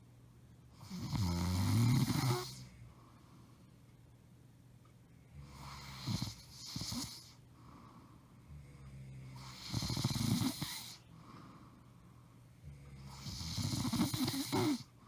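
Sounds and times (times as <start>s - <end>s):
woman snoring: 0.8s - 2.7s, 5.4s - 7.4s, 8.5s - 11.0s, 12.6s - 14.9s.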